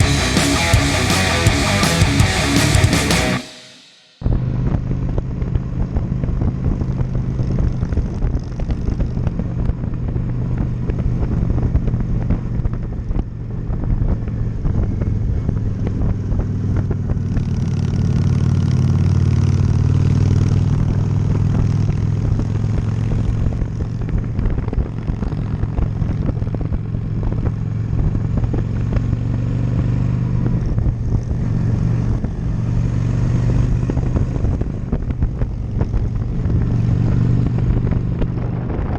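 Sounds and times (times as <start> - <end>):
motorcycle engine running: 0.0 - 38.9
wind rushing past microphone: 30.5 - 38.9.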